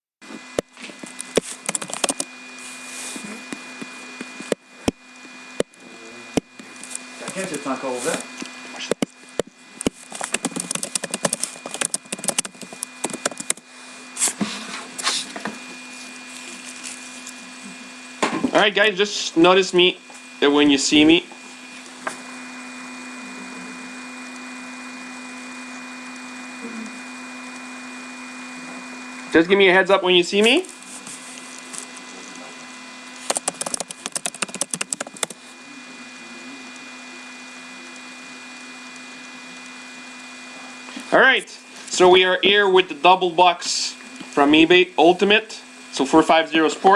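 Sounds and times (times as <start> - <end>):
electrical hum: 0.2 - 46.9
sharp clicks and knocks: 0.6 - 2.3, 8.8 - 13.6.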